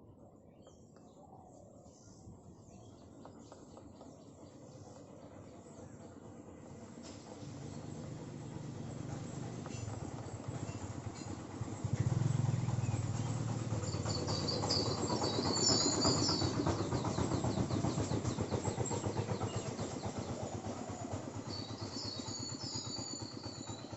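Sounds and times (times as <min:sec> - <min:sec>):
bird chirping: 0:07.6 - 0:20.6.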